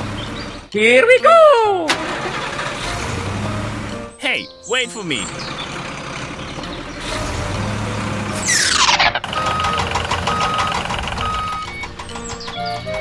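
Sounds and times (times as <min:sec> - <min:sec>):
vehicle engine rumbling: 0:00.0 - 0:00.7, 0:01.8 - 0:04.2, 0:05.0 - 0:13.0
reversing alarm beeps: 0:08.6 - 0:13.0.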